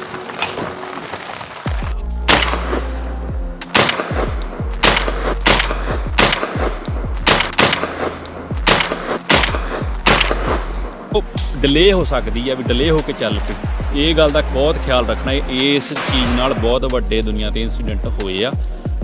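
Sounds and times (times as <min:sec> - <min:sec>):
low bass background music: 0:01.8 - 0:19.0
gunshots with echo: 0:02.3 - 0:03.0, 0:03.6 - 0:11.0, 0:16.0 - 0:16.7.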